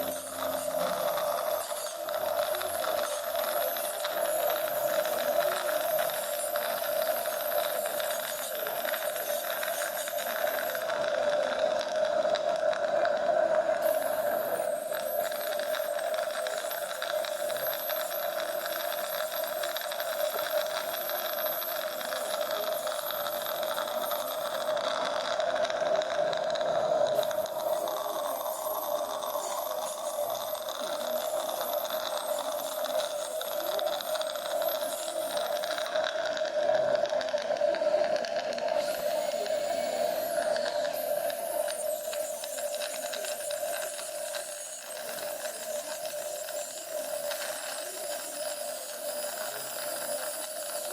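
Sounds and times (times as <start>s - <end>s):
dental equipment hum and hiss: 0.0s - 50.9s
faint high-pitched whine: 13.4s - 50.9s.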